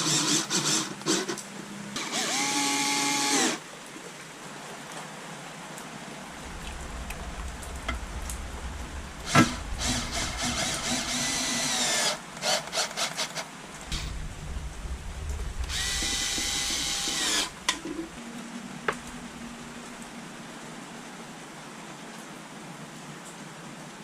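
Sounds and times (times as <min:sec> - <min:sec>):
cordless drill whine: 0:00.0 - 0:01.4, 0:02.0 - 0:03.6, 0:09.2 - 0:14.2, 0:15.7 - 0:17.6.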